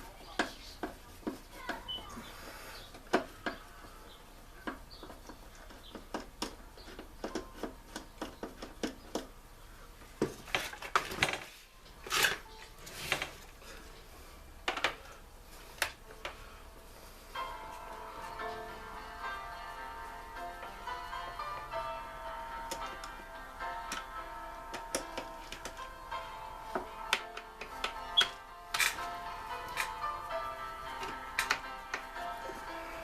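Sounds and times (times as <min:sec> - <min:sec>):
background music: 0:00.0 - 0:09.4, 0:14.3 - 0:33.0
tools and metal parts clinking: 0:10.5 - 0:13.4, 0:27.6 - 0:29.1, 0:29.7 - 0:30.1.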